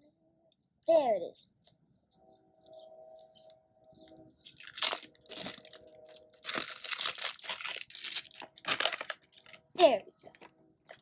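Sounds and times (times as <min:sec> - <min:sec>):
plastic wrapping crackling: 0:04.4 - 0:11.0.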